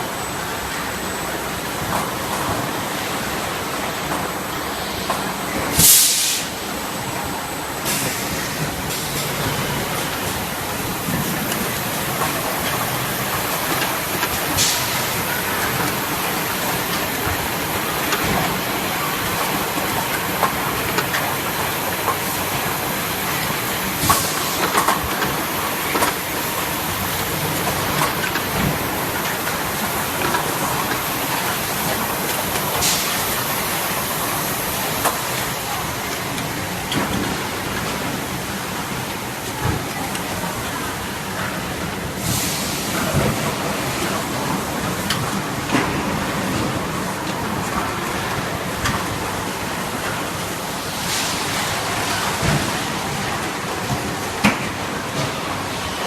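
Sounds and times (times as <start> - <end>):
bottling machinery running: 0.0 - 56.0
short sharp hisses: 5.8 - 6.6.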